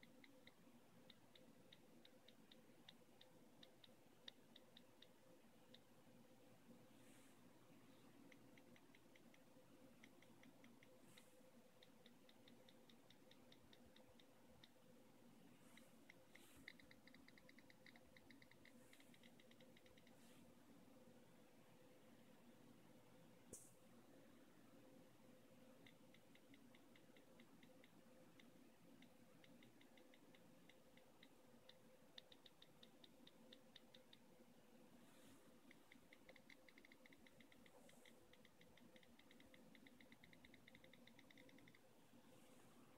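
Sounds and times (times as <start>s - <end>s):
on-screen keyboard clicks: 0.0s - 6.0s, 8.2s - 15.0s, 15.7s - 20.2s, 25.6s - 34.5s, 35.6s - 42.0s
faint steady hum: 0.0s - 42.9s.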